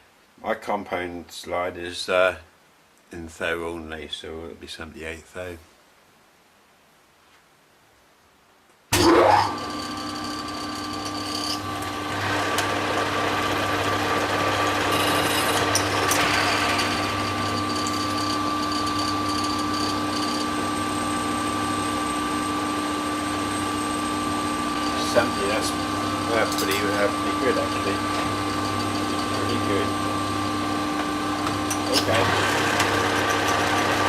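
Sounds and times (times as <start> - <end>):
lathe humming and whining: 9.0 - 34.0
lathe tool cutting metal: 9.0 - 34.0.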